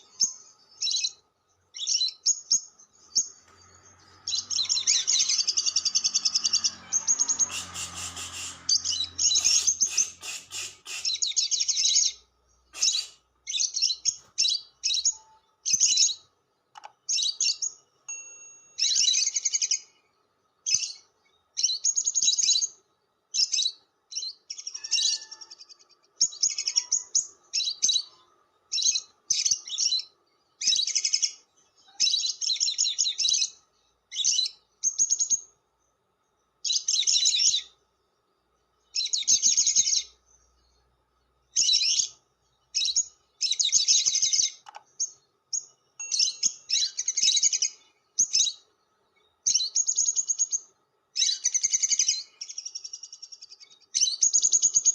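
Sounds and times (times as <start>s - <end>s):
lovebird chirping: 0.0s - 35.5s, 36.6s - 37.8s, 38.8s - 54.9s.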